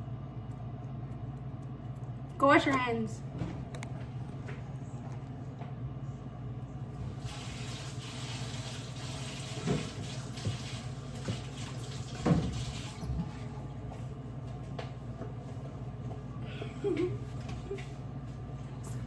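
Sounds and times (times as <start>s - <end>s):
tap water splashing into basin: 7.2s - 13.2s.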